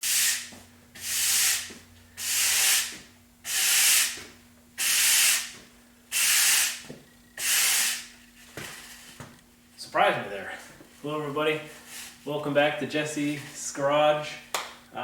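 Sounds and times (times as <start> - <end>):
hissing rubbing strokes: 0.0 - 4.2, 4.8 - 9.2
faint steady hum: 0.0 - 15.0.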